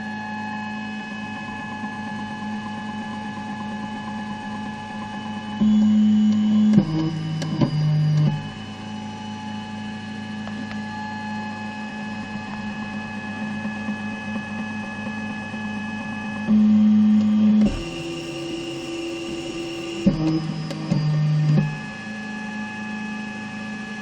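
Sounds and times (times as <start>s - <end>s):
stepper motors whining: 17.2s - 22.5s.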